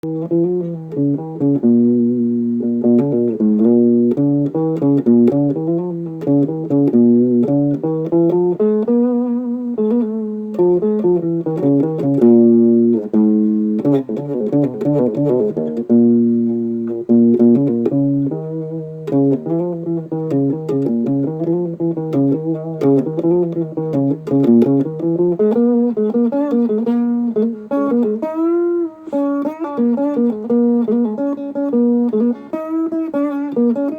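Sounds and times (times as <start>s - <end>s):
bass line: 0.0s - 25.1s
plucked guitar: 0.0s - 33.9s.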